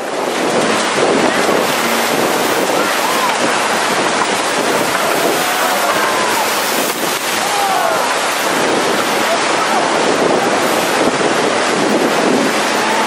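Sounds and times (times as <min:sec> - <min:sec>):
whitewater rapids rushing: 0:00.0 - 0:13.0
wind on microphone: 0:00.0 - 0:13.0
faint voices calling out: 0:01.2 - 0:04.0, 0:04.6 - 0:10.7.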